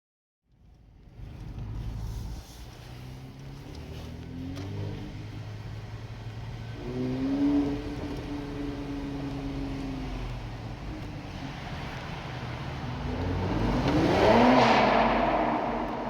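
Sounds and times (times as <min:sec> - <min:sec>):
car engine revving: 0:01.0 - 0:16.0.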